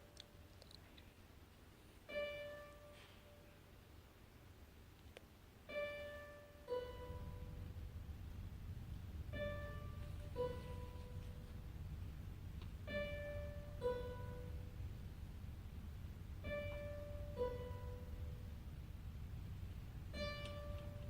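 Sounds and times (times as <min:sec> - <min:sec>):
classical guitar plucked notes: 0:05.7 - 0:07.6, 0:09.3 - 0:11.3, 0:12.9 - 0:14.5, 0:16.5 - 0:18.2, 0:20.1 - 0:21.0.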